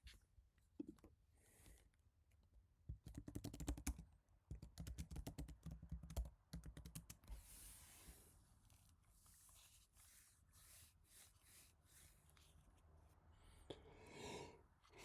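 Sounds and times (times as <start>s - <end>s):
keyboard typing: 3.0s - 7.3s.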